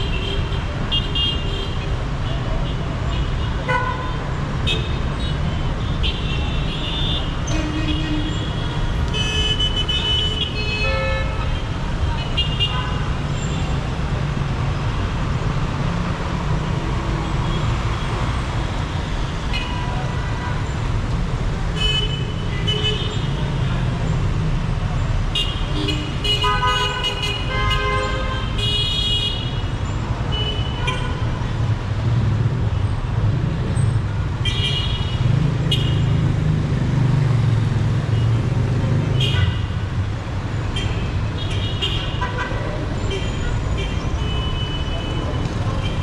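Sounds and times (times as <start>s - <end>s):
traffic rumble: 0.0s - 46.0s
vehicle horns tooting: 25.3s - 29.6s.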